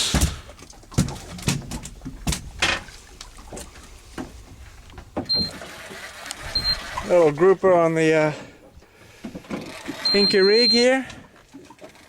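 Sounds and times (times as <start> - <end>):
knocks and thumps: 0.0 - 2.9
short high beep: 6.6 - 6.8, 10.0 - 10.8.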